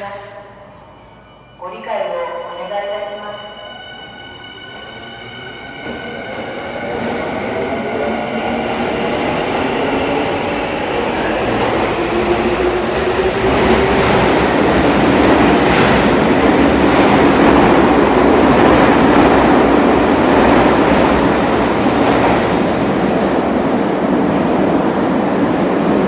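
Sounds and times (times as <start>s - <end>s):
train wheels rumbling on rails: 5.7s - 26.0s.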